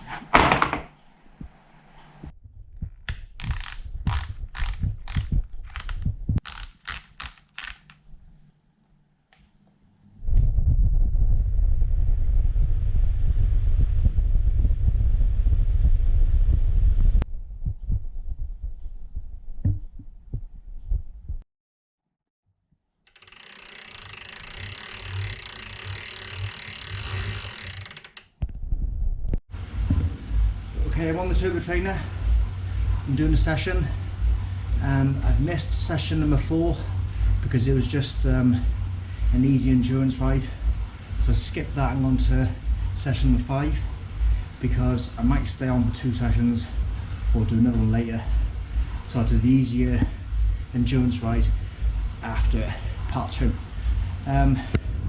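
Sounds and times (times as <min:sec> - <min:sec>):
bike trainer whine and hiss: 0:03.4 - 0:05.8, 0:06.4 - 0:07.7, 0:23.1 - 0:28.2, 0:29.6 - 0:55.0
ratchet clicking: 0:03.4 - 0:08.0, 0:23.1 - 0:28.3
low uneven pulsing: 0:10.0 - 0:21.4, 0:23.2 - 0:55.0.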